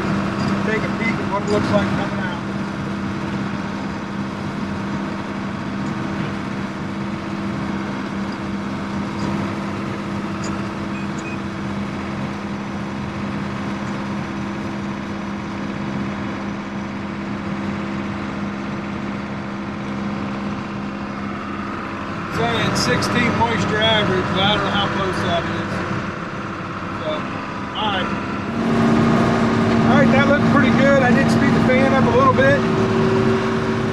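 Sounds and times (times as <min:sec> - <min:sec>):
combine harvester droning: 0:00.0 - 0:33.9.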